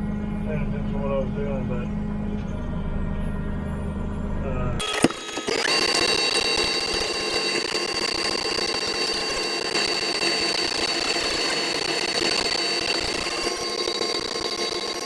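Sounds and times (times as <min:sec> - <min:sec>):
combine harvester running: 0:00.0 - 0:05.2
high even whine: 0:00.0 - 0:15.0.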